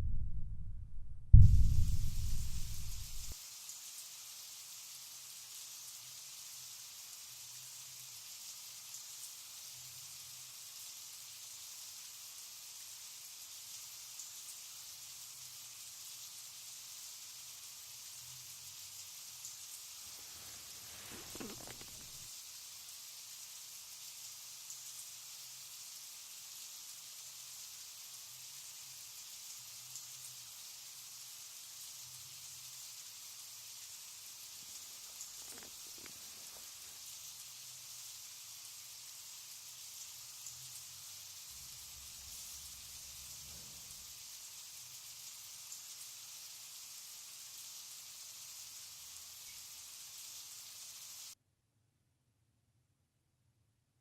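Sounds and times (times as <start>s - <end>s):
faint low hum: 0.0s - 3.3s
faint high-pitched hiss: 1.4s - 51.4s.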